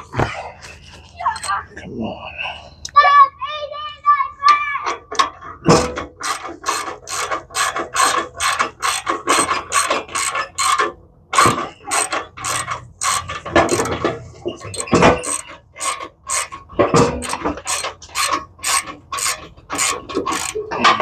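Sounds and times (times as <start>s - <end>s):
socket ratchet clicking: 6.2s - 14.0s, 14.6s - 20.7s.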